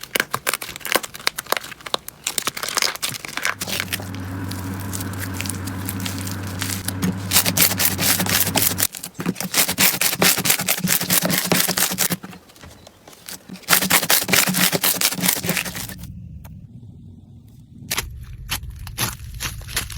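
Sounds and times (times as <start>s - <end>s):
low steady hum: 3.5s - 8.9s.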